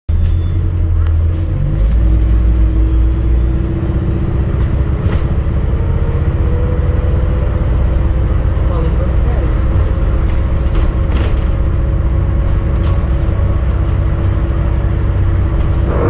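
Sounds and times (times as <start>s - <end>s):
bus engine low rumble: 0.1s - 16.0s
steady whine: 15.8s - 16.0s.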